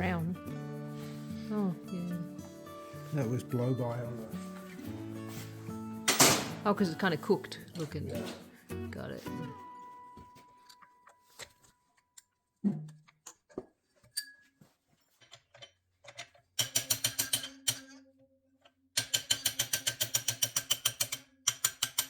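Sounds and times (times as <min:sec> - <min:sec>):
tools knocking: 0:06.1 - 0:06.7, 0:15.3 - 0:17.9, 0:19.0 - 0:22.0.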